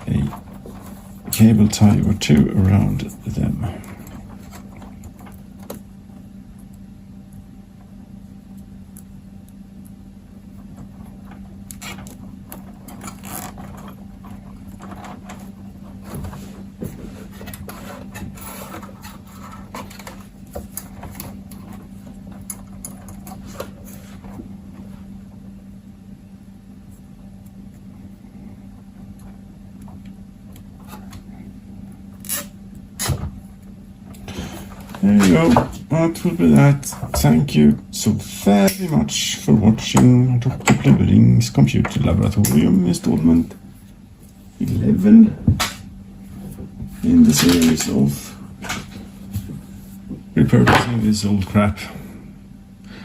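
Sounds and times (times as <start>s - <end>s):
rustling of handled cable: 0.0s - 6.8s, 7.7s - 25.6s
steady low hum: 0.0s - 53.0s.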